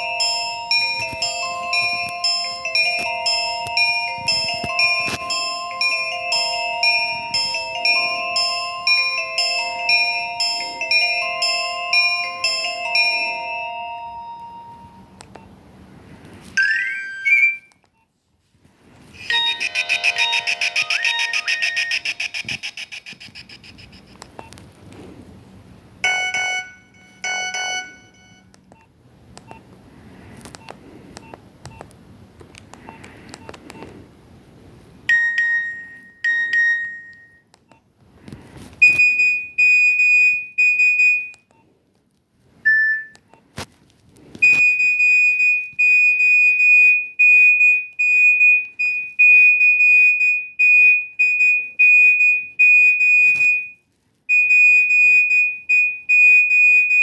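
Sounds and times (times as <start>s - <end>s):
phone chiming beeps: 0.0s - 15.2s, 16.6s - 17.7s, 19.2s - 23.8s, 26.0s - 28.5s, 35.1s - 37.4s, 42.7s - 43.2s
high beep pattern: 16.6s - 17.7s, 19.2s - 24.0s, 26.0s - 28.5s, 35.1s - 37.4s, 42.7s - 43.2s
fast repeating alarm beep: 19.2s - 24.0s, 26.0s - 28.4s.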